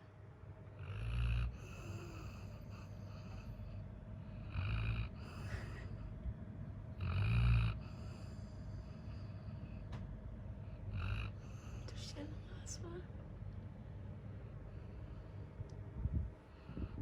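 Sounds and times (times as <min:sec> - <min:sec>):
dog snoring loudly: 0:00.8 - 0:03.6, 0:04.3 - 0:05.8, 0:07.0 - 0:09.2, 0:10.8 - 0:11.7.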